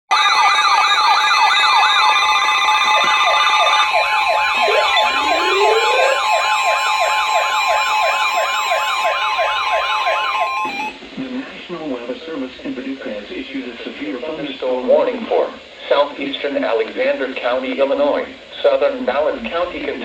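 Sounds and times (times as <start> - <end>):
electronic sirens sweeping: 0.1 - 11.0
steady alarm tones: 1.0 - 11.0.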